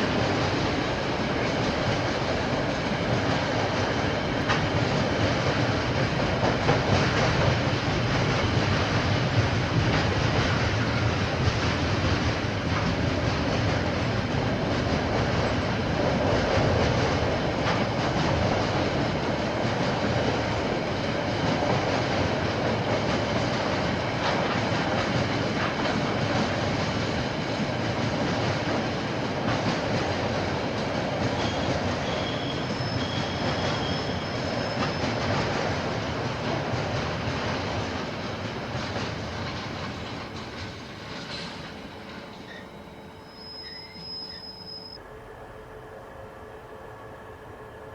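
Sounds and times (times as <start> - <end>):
train wagons rumbling and rattling: 0.0 - 45.0
high wheel squeals: 31.4 - 35.2, 42.3 - 46.2.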